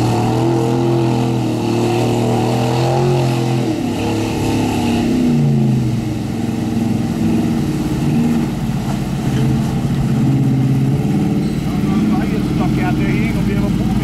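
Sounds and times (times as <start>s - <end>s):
engine revving: 0.0s - 14.0s.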